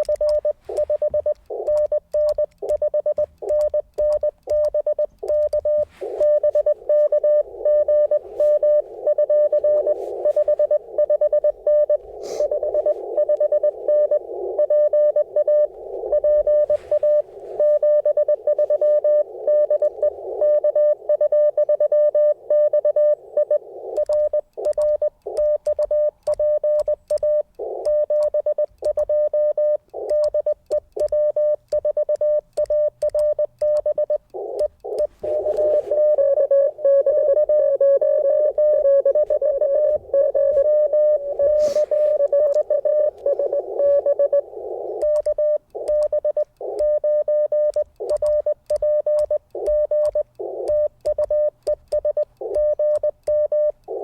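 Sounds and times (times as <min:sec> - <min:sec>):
morse code tone: 0:00.0 - 0:54.0
static hiss: 0:05.1 - 0:20.4, 0:34.2 - 0:47.0, 0:49.3 - 0:54.0.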